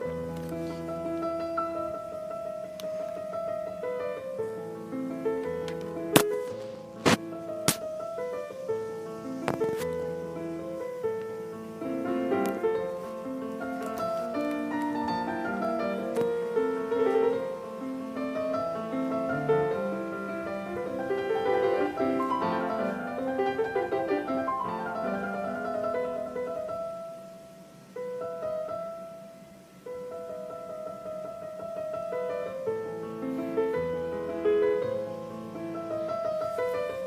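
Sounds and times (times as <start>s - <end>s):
piano music: 0.0s - 37.0s.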